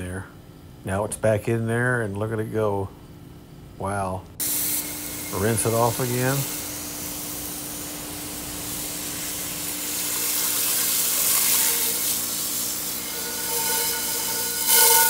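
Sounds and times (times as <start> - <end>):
water spraying from a hose: 4.4 - 15.0.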